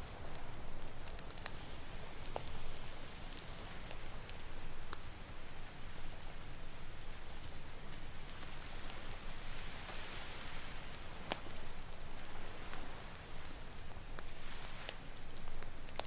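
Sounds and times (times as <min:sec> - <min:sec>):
campfire crackling and popping: 0:00.0 - 0:16.0.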